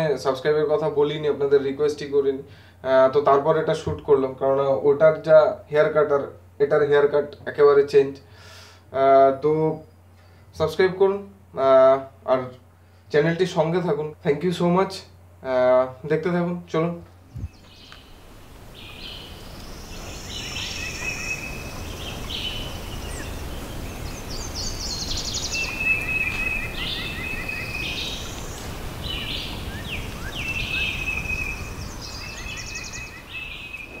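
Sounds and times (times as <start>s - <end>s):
birds chirping and singing: 17.2s - 34.0s.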